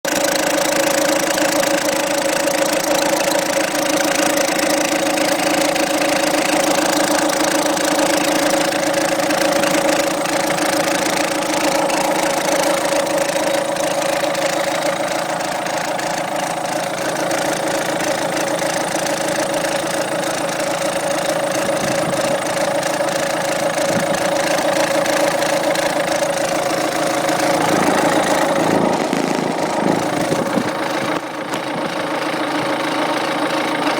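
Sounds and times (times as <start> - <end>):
diesel engine idling: 0.0 - 33.9.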